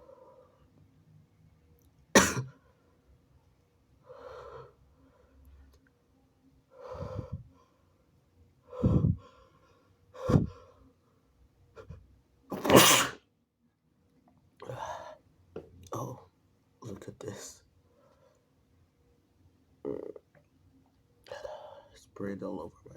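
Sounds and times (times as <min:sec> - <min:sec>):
person sneezing: 0:02.2 - 0:02.5, 0:12.5 - 0:13.2
gasping breaths: 0:06.8 - 0:07.6, 0:08.6 - 0:09.6, 0:10.2 - 0:10.8.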